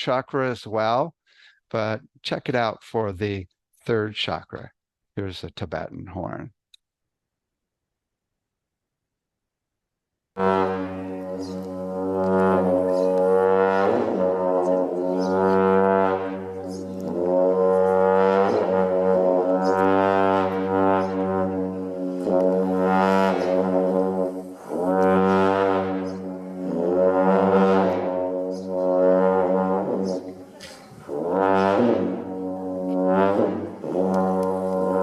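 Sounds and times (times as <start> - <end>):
long horn deep drone: 10.4 - 35.0.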